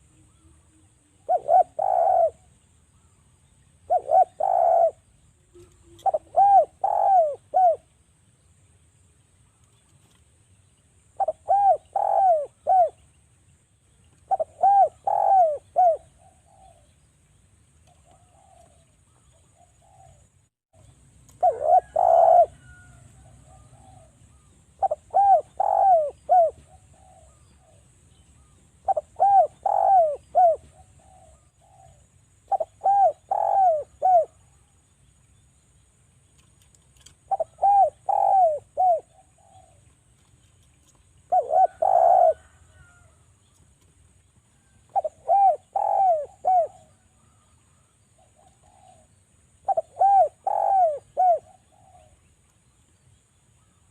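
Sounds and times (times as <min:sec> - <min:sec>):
dove cooing: 0:00.0 - 0:02.6, 0:03.8 - 0:07.9, 0:11.2 - 0:13.1, 0:14.2 - 0:16.9, 0:17.8 - 0:20.3, 0:21.3 - 0:34.6, 0:37.0 - 0:43.2, 0:44.6 - 0:47.5, 0:48.2 - 0:52.2.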